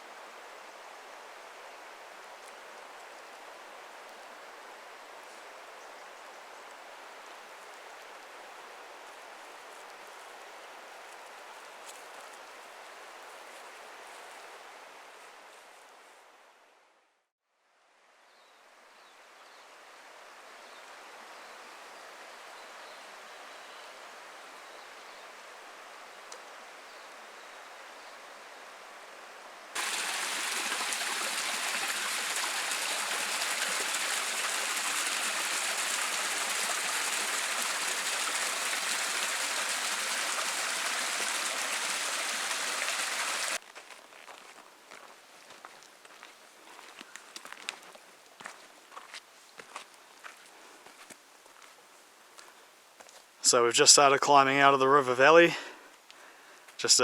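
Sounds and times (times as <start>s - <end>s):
river water flowing: 0.0s - 15.1s, 19.2s - 43.6s.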